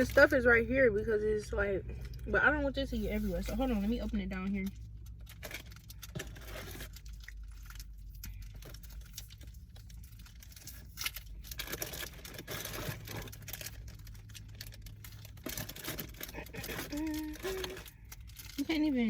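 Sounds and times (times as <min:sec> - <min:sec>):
plastic wrapper crinkling: 0:03.2 - 0:19.0.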